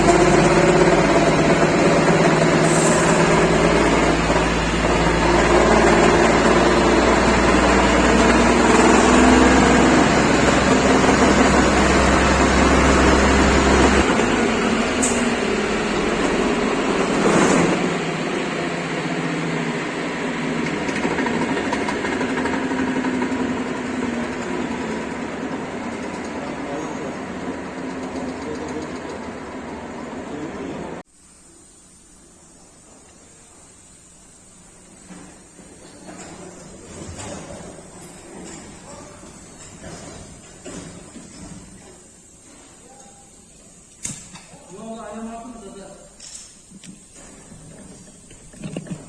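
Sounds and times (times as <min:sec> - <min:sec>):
deep drone: 0:00.0 - 0:25.6
drivetrain whine: 0:00.0 - 0:31.0
truck running: 0:00.0 - 0:31.0.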